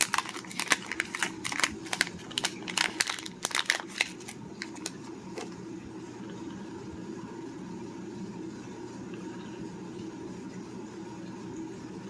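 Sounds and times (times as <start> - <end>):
plastic packaging crinkling: 0.0 - 5.6
faint steady hum: 0.0 - 12.0.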